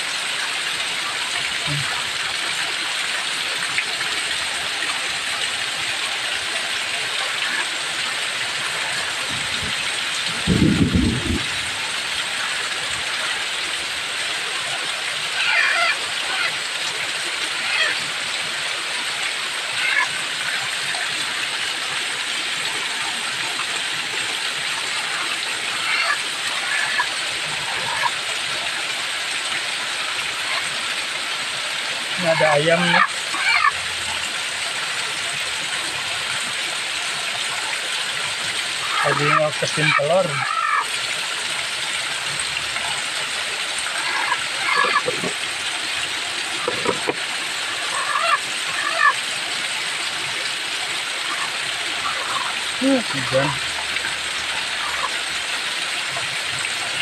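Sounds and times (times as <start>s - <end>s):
heavy rain: 0.0s - 57.0s
water running off: 0.0s - 57.0s
chicken calls: 15.4s - 16.6s, 25.8s - 28.2s, 32.2s - 33.8s, 38.8s - 40.9s, 43.9s - 45.4s, 47.6s - 49.2s, 54.8s - 55.2s.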